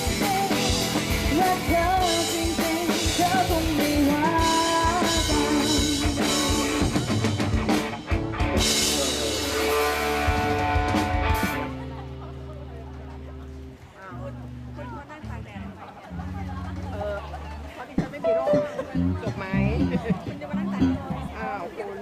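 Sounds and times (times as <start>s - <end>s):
person singing: 0.0s - 7.3s, 8.6s - 10.6s
drum kit: 0.0s - 13.4s, 18.0s - 21.6s
guitar chords: 0.0s - 21.6s.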